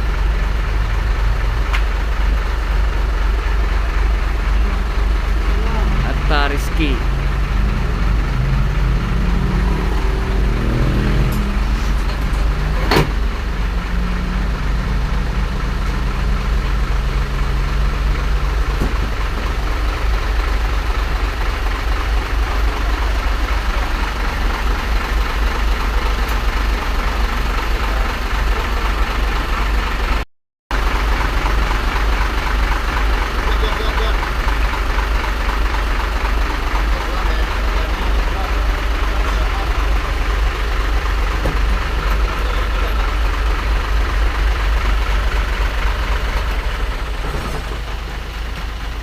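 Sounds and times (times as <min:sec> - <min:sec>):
diesel truck engine rumble: 0:00.0 - 0:49.0.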